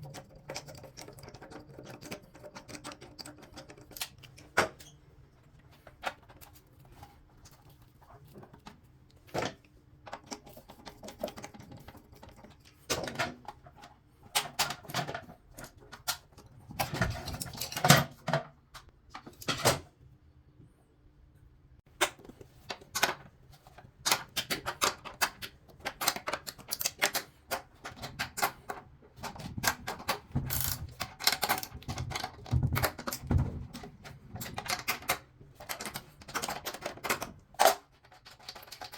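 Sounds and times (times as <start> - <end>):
clicks taps and clatter: 0.0 - 5.0.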